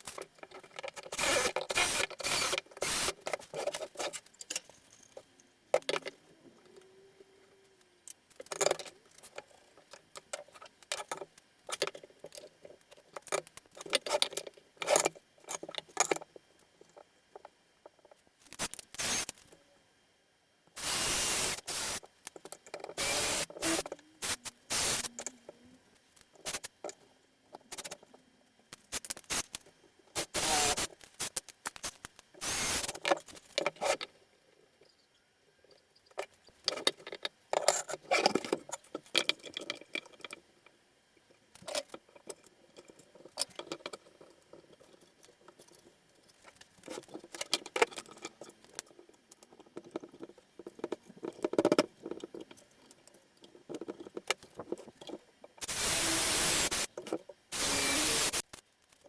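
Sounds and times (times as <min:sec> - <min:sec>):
scraping or hissing bursts: 0:20.8 - 0:22.1, 0:23.0 - 0:25.1, 0:30.2 - 0:32.9, 0:55.6 - 0:56.9, 0:57.5 - 0:58.4.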